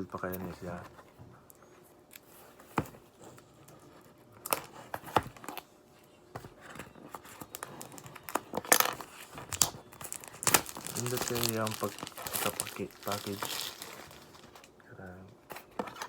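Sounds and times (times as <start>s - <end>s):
packaging rustling and crinkling: 4.4s - 5.6s, 7.0s - 14.7s.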